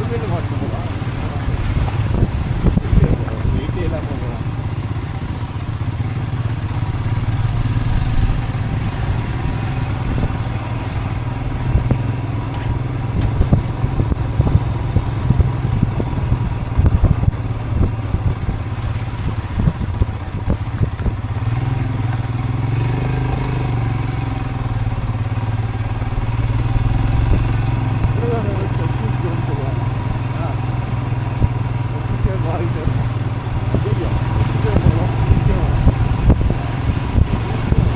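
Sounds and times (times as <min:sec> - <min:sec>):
motorcycle engine running: 0:00.0 - 0:37.9
motorcycle knocking and rattling: 0:00.0 - 0:37.9.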